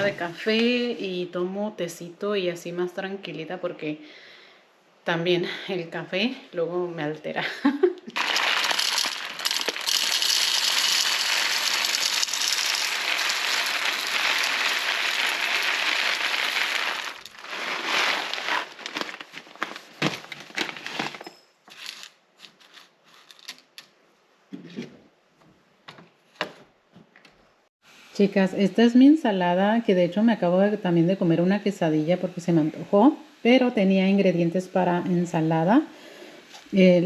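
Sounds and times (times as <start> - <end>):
coffee machine running: 8.2 - 17.5.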